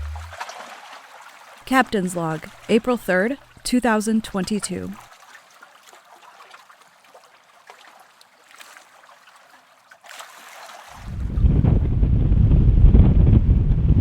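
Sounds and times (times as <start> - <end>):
water trickling and pattering: 0.0 - 11.1
wind buffeting microphone: 11.1 - 14.0.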